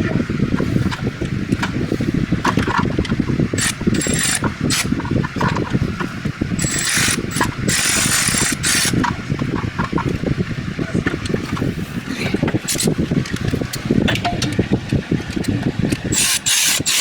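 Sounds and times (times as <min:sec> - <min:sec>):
low rattling rumble: 0:00.0 - 0:16.8
ratchet wrench clicking: 0:03.6 - 0:04.9, 0:06.6 - 0:09.1, 0:15.9 - 0:17.0.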